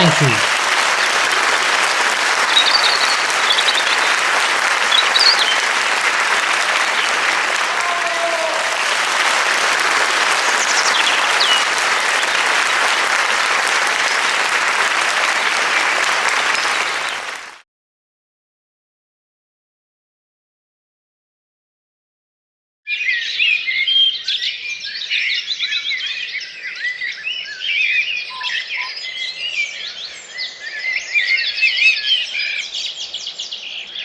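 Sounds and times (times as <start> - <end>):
crowd applause: 0.0 - 17.6
faint bird chirps: 2.5 - 4.1.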